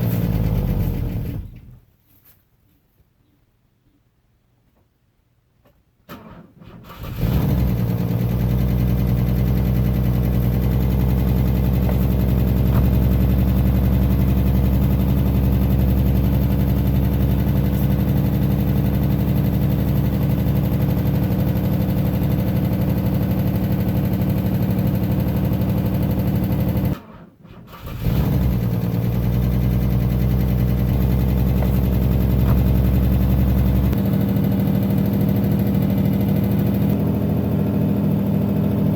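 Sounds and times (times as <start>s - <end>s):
car engine cranking: 6.1s - 37.0s
car engine idling: 7.4s - 27.0s, 28.1s - 38.9s.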